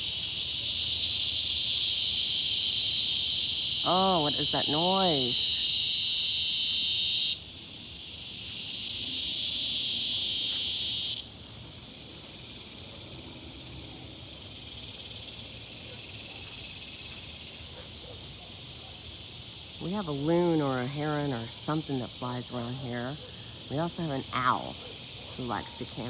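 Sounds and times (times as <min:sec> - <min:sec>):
high-pitched insect buzzing: 0:00.0 - 0:11.2.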